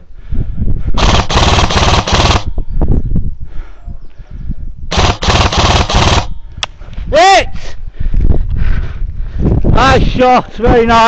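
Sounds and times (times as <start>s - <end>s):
airsoft gun full-auto bursts: 1.0s - 2.5s, 4.9s - 6.4s.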